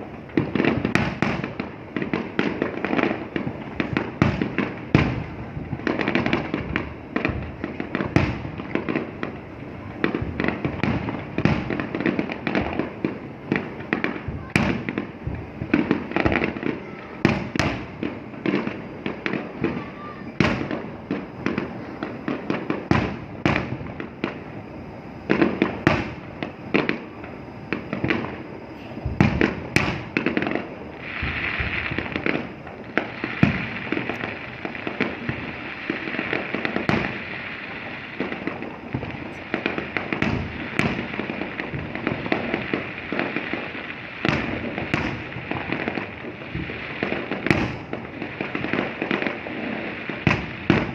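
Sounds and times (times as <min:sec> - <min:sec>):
fireworks bursting: 0:00.0 - 0:50.9
steady hiss: 0:00.0 - 0:50.9.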